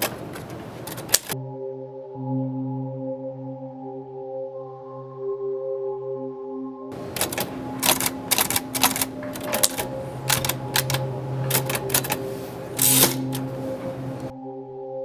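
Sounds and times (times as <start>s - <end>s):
typewriter keys clacking: 0.0s - 1.4s, 7.0s - 14.3s
typewriter rasping: 0.0s - 1.4s, 7.0s - 14.3s
soft musical drone: 1.3s - 15.0s.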